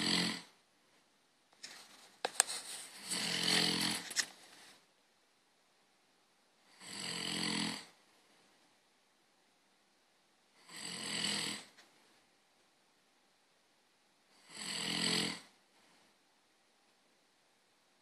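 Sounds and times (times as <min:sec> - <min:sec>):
person snoring: 0:00.0 - 0:00.6, 0:03.0 - 0:04.2, 0:06.7 - 0:08.0, 0:10.6 - 0:11.8, 0:14.4 - 0:15.6.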